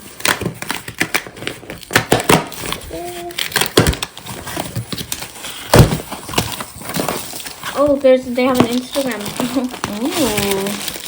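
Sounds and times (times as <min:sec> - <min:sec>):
paper and plastic wrap crackling: 0:00.0 - 0:11.0
person humming: 0:02.9 - 0:03.4.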